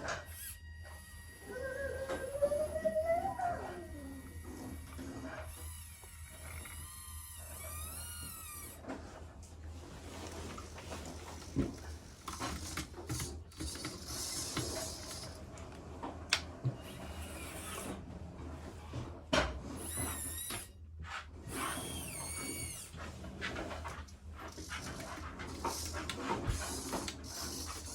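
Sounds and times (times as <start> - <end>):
small electric motors whirring: 0.0 - 8.9, 12.4 - 15.4, 16.8 - 18.0, 21.5 - 22.9, 24.5 - 27.9.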